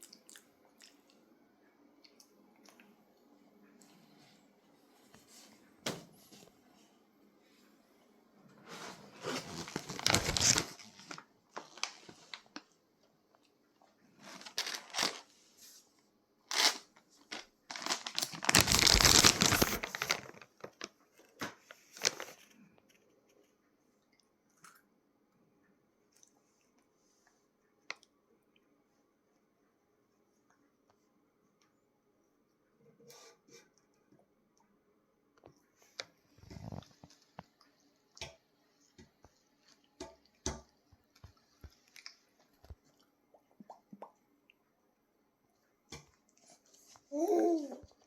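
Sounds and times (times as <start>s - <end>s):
plastic snack packet crinkling: 9.3s - 12.7s, 14.1s - 15.3s, 16.5s - 22.6s.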